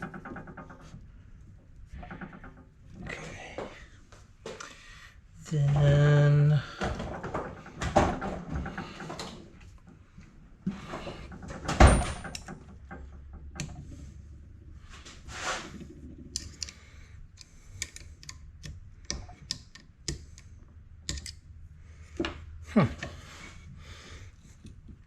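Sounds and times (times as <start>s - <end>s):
metal parts clinking and knocking: 17.4s - 21.5s.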